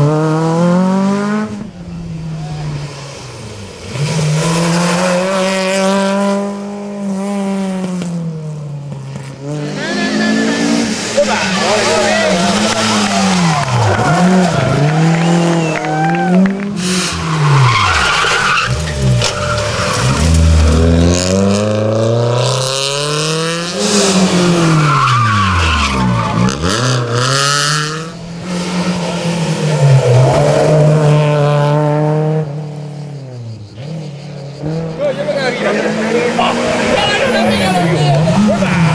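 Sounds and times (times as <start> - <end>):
rally car engines revving: 0.0 - 38.9
tyre squeal: 16.8 - 20.8, 23.9 - 27.1.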